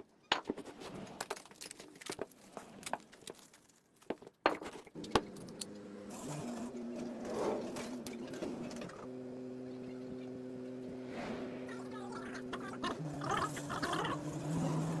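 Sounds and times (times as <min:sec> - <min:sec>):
rough scraping: 0:10.8 - 0:13.8
power tool motor humming: 0:12.3 - 0:15.0.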